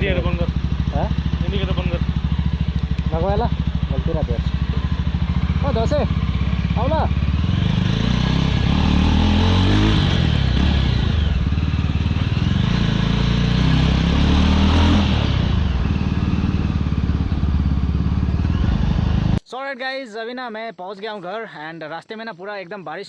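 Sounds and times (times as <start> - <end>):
motorcycle engine open exhaust: 0.0 - 19.4.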